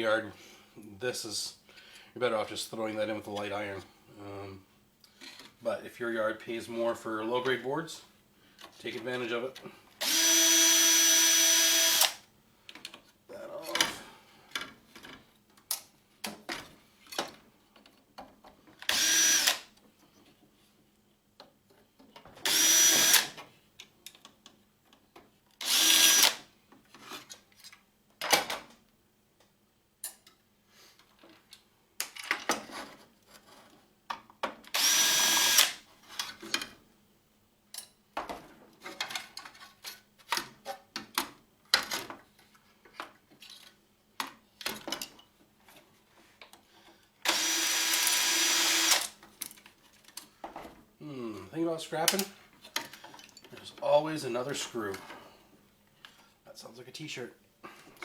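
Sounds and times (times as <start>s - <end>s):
power drill whirring: 10.0s - 12.2s, 18.9s - 19.7s, 22.5s - 23.4s, 25.6s - 26.4s, 34.8s - 35.8s, 47.2s - 49.2s.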